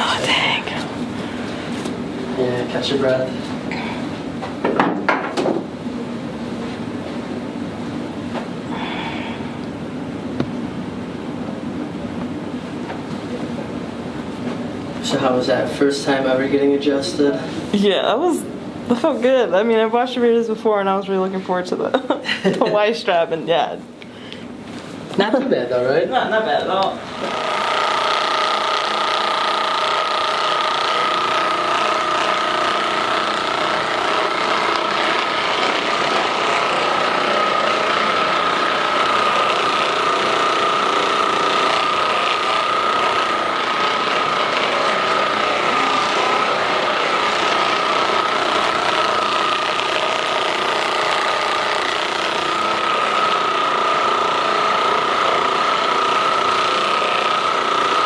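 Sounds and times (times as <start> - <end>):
massage gun motor whine: 26.6 - 58.0.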